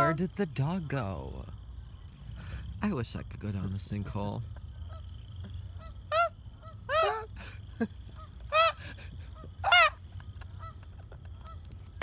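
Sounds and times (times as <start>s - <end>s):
goose honking: 0.0s - 0.4s, 3.9s - 7.3s, 7.9s - 12.0s.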